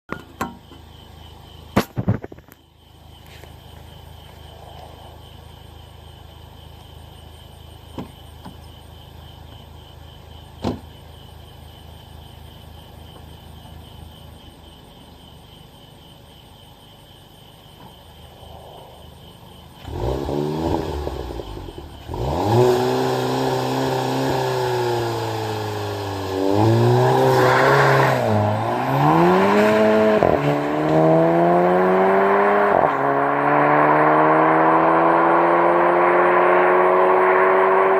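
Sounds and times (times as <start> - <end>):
car engine accelerating: 19.6 - 37.9.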